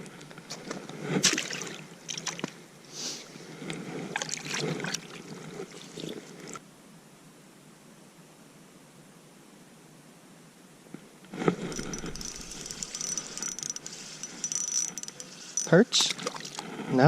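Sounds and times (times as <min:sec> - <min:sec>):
water sloshing and splashing: 0:01.2 - 0:02.6, 0:04.1 - 0:06.6, 0:15.3 - 0:16.7
handling knocks and clicks: 0:11.5 - 0:16.2.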